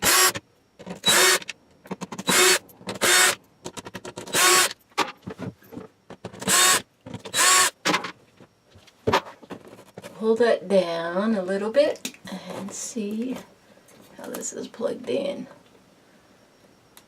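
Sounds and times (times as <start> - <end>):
cordless drill motor whine: 0.0 - 3.4, 4.2 - 4.8, 6.2 - 7.8.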